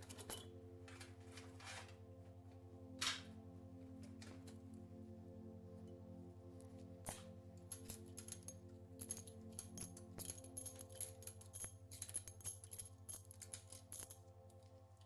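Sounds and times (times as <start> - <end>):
metal engine parts clinking: 0.0 - 0.5, 7.1 - 14.2
faint background music: 0.0 - 15.0.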